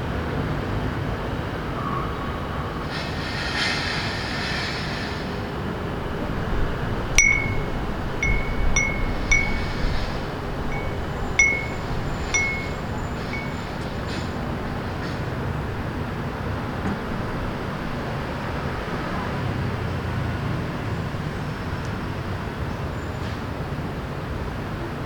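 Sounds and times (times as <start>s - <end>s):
city traffic hum: 0.0s - 25.0s
short hiss: 2.9s - 5.4s
wind chime ringing: 7.2s - 14.5s.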